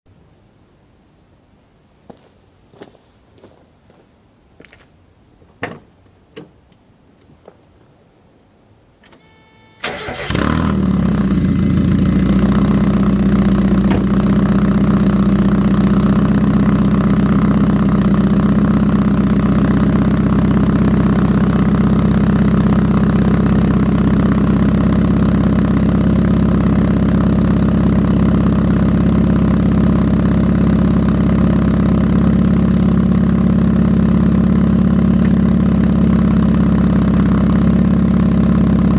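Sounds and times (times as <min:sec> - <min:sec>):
car engine starter cranking: 0:09.0 - 0:13.0
car engine idling: 0:09.8 - 0:38.9.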